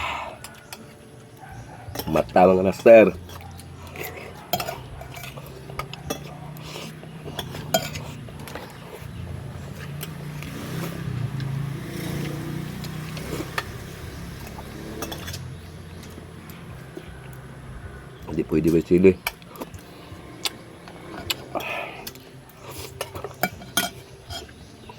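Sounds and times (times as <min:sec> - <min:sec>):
cutlery clinking on a plate: 0:01.9 - 0:09.0, 0:14.9 - 0:15.5, 0:21.1 - 0:24.6.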